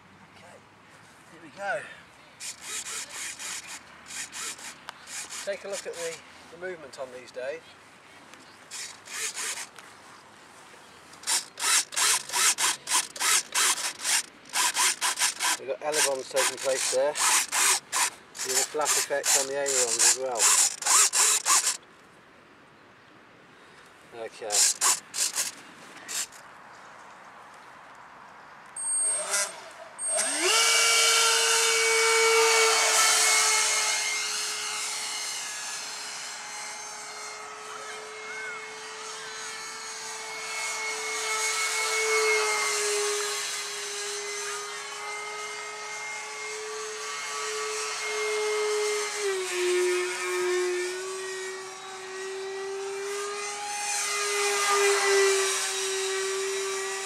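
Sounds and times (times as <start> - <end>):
electric ducted fan whine: 28.8 - 57.0.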